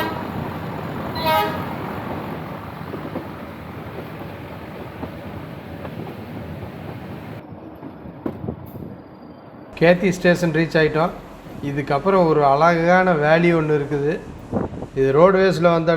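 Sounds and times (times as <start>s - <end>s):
locomotive horn toot: 0.0s - 0.5s, 1.1s - 1.9s
train rumbling: 0.0s - 15.9s.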